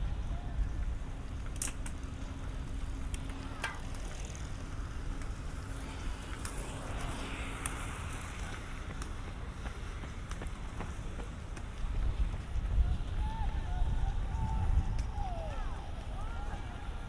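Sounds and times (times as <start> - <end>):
low rumble of traffic: 0.0 - 17.0.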